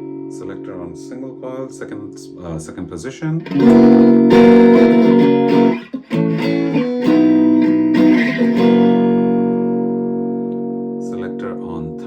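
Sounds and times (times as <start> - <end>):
distorted electric guitar: 3.2 - 12.0.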